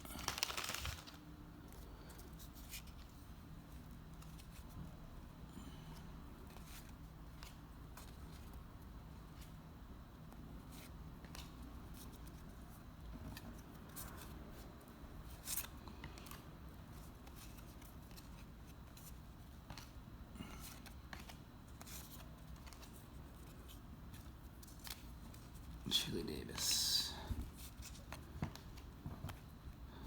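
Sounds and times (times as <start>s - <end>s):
low steady hum: 0.0s - 30.0s
trading cards being flipped: 0.1s - 1.2s, 20.6s - 25.6s.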